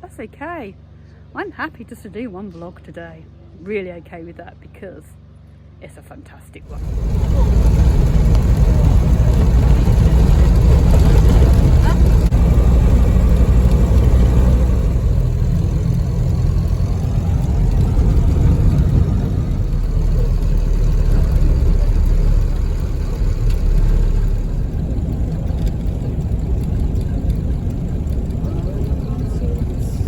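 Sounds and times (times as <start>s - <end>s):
low rumble: 6.6s - 30.0s.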